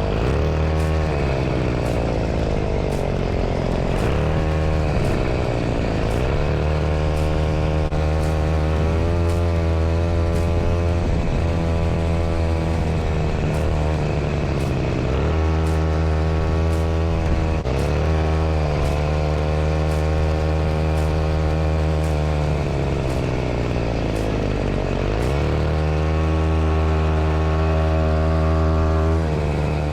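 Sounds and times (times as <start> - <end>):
truck engine running: 0.0 - 29.9.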